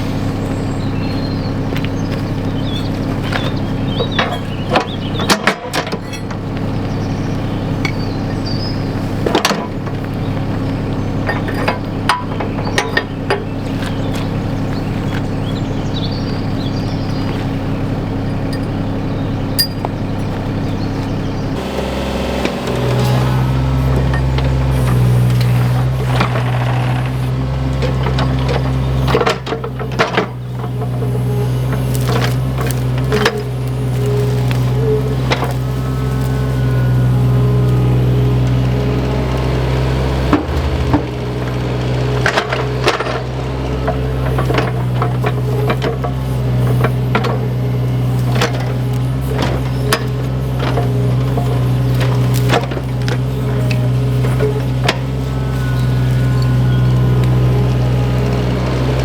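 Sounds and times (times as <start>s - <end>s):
diesel excavator engine running: 0.0s - 59.0s
metallic clanks and knocks: 40.2s - 47.5s.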